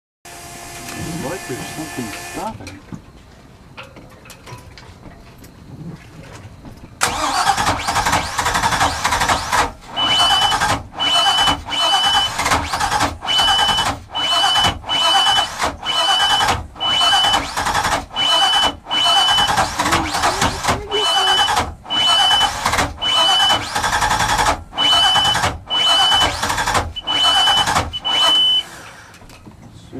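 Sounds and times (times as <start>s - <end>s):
boat engine turning over: 0.3s - 2.8s, 6.2s - 29.2s
high steady beep: 13.3s - 17.4s, 18.2s - 23.6s, 24.8s - 26.4s, 27.0s - 28.7s.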